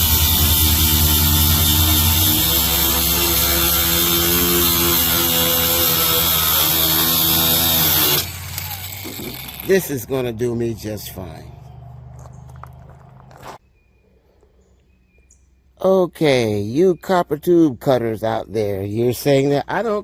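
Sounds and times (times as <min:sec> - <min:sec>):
angle grinder motor whining: 0:00.0 - 0:10.4.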